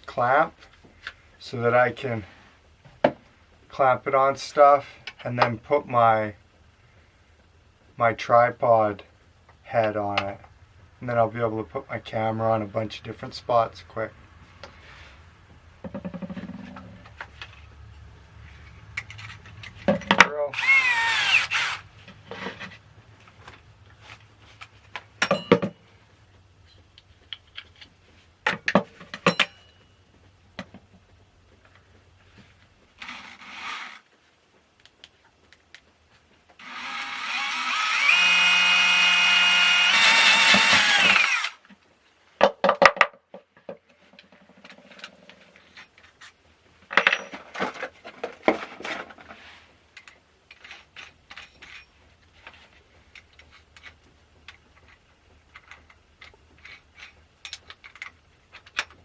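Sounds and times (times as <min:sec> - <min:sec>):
tools clicking and knocking: 0:15.8 - 0:17.6, 0:18.9 - 0:20.4, 0:24.6 - 0:25.8, 0:27.0 - 0:29.8, 0:42.4 - 0:49.3, 0:50.0 - 0:59.0
power drill whining: 0:20.5 - 0:21.9, 0:33.0 - 0:34.1, 0:36.6 - 0:41.6.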